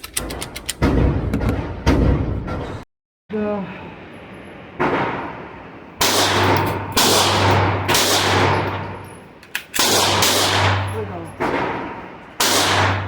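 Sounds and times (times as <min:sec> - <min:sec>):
gunshot echo: 0:06.0 - 0:08.9, 0:09.8 - 0:13.0
pistol shots: 0:06.0 - 0:09.0, 0:09.7 - 0:13.0.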